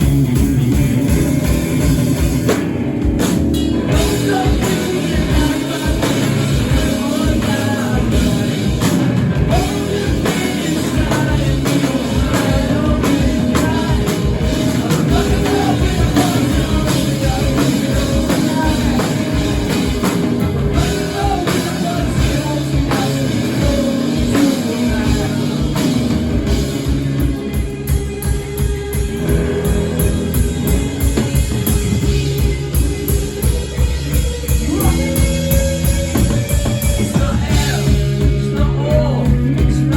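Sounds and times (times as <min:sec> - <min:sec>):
driving drum beat: 0:00.0 - 0:39.9
live rock band: 0:00.0 - 0:39.9
person singing: 0:03.9 - 0:20.1, 0:20.7 - 0:26.2, 0:37.0 - 0:39.9.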